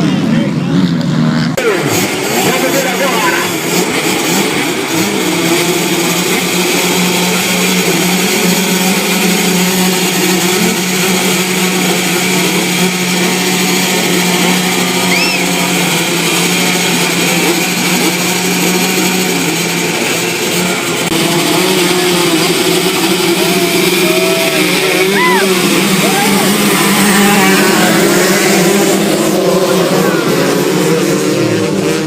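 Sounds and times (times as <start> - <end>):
motorcycle engines droning: 0.0 - 32.0
short high chirp: 15.1 - 15.5.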